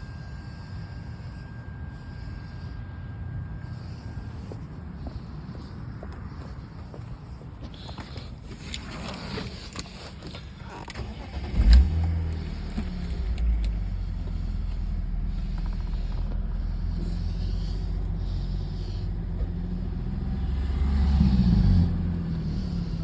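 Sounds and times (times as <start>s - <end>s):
car engine misfiring and revving: 10.6s - 23.0s.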